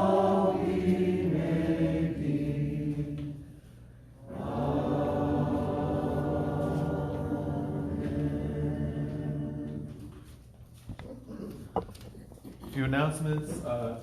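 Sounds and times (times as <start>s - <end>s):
congregation singing a held chord: 0.0s - 10.3s.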